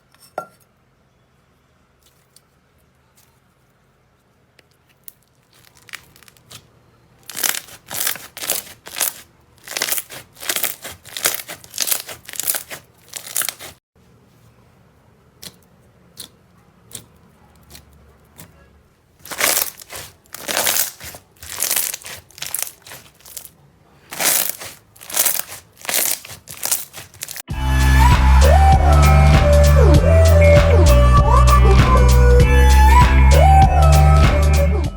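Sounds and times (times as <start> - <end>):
slime squishing and crackling: 4.8 - 6.6, 7.2 - 13.8, 19.2 - 23.5, 24.1 - 27.5
music: 27.5 - 34.9.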